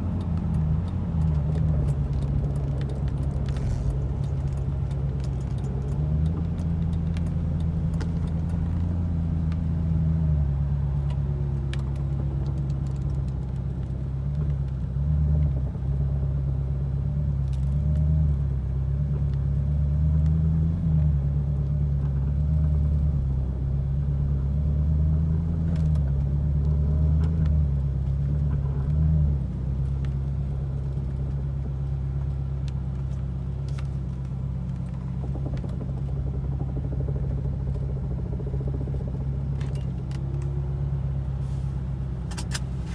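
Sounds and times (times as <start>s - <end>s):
sharp clicks and ticks: 0.0s - 8.6s
car engine running at low revs: 0.0s - 42.9s.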